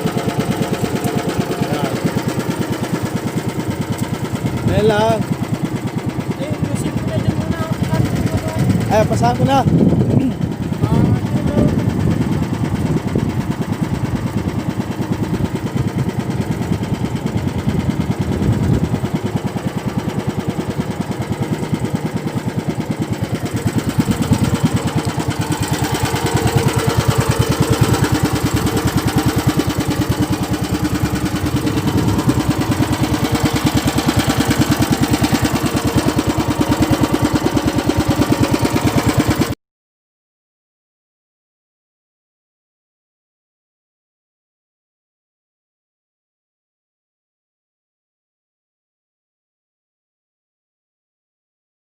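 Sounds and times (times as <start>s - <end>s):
boat engine running: 0.0s - 39.6s.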